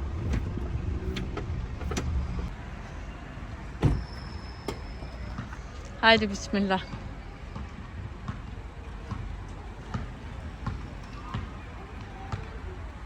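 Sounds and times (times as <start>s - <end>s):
car engine idling: 0.0s - 2.5s
loud thump: 3.8s - 4.9s.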